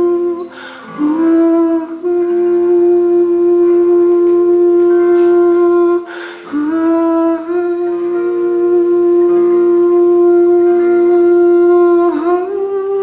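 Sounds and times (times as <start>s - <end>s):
wordless melody of held notes: 0.0s - 13.0s
short breath: 0.4s - 1.0s, 6.0s - 6.6s.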